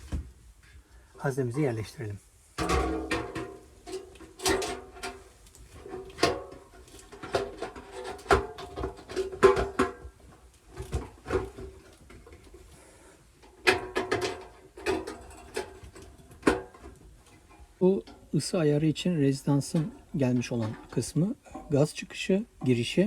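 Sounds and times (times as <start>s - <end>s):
sheet metal knocking and clanking: 2.6s - 10.2s, 13.4s - 18.3s.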